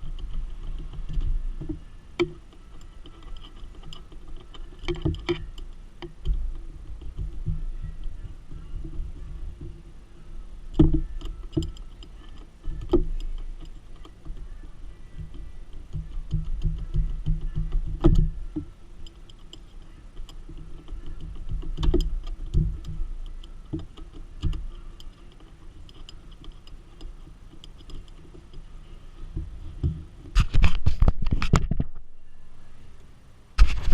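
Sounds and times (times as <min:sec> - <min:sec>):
tool knocking against dash: 0:10.7 - 0:19.2.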